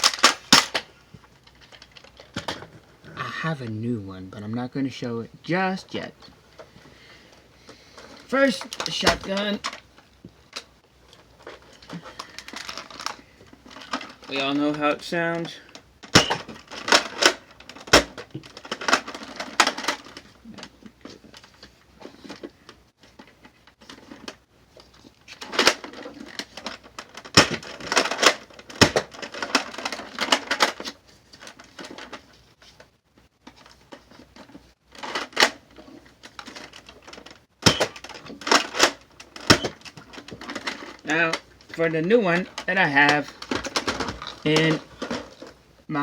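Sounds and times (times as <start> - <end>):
toy gun plastic clacking: 36.4 - 41.4.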